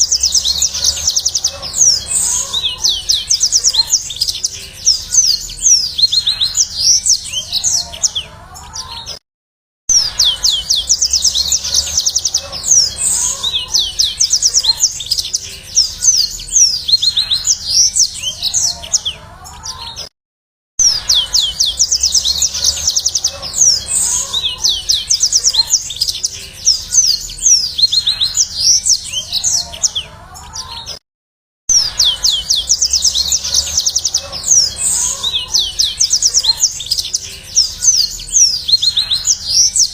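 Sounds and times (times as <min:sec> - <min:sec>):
canary trilling song: 0:00.0 - 0:09.2, 0:09.9 - 0:20.1, 0:20.8 - 0:31.0, 0:31.7 - 0:39.9.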